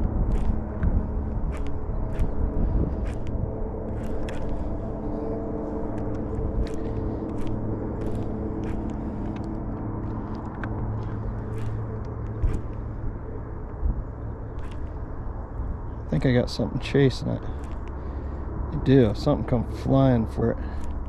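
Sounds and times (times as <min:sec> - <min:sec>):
electric trolling motor humming: 0:00.0 - 0:19.3.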